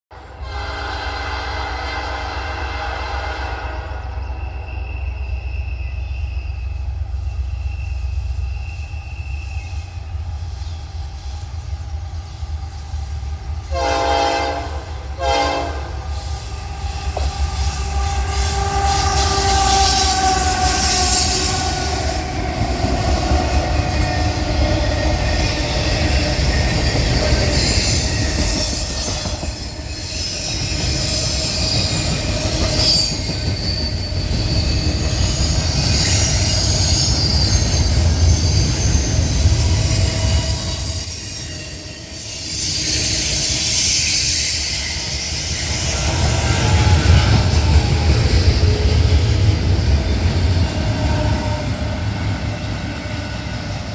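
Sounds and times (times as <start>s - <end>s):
locomotive air horn blasts: 0.1s - 4.2s, 13.7s - 16.1s
freight train rumbling past: 0.1s - 53.9s
wheels squealing on rails: 0.4s - 53.9s.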